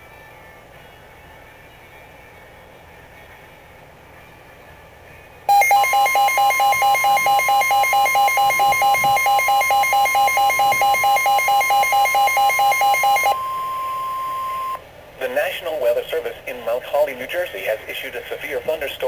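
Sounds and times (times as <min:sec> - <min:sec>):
electronic alert alarm tones: 0:05.5 - 0:14.8.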